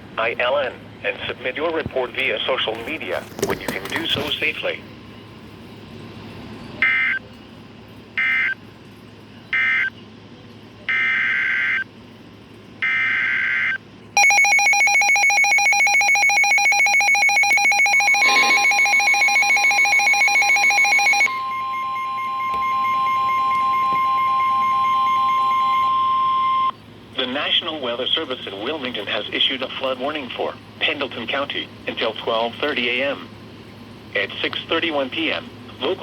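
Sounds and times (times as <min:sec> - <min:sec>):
short buzzing data bursts: 0:14.2 - 0:23.4
loud pulsing alert tone: 0:14.2 - 0:26.7.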